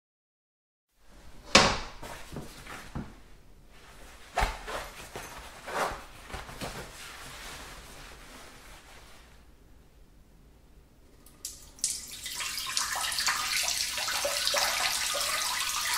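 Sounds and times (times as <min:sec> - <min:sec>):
door shutting with a bang: 0:01.5 - 0:02.0.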